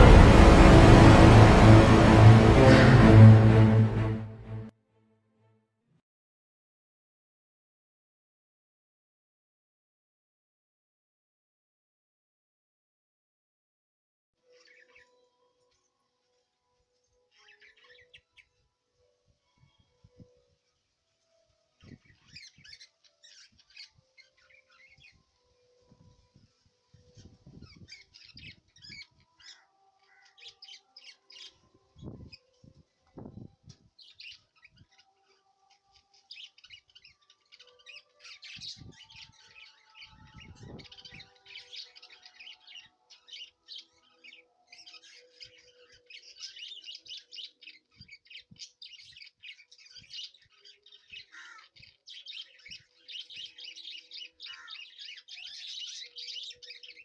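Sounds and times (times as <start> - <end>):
low thumps: 0.0 - 4.6
small birds chirping: 17.1 - 18.4, 34.0 - 57.0.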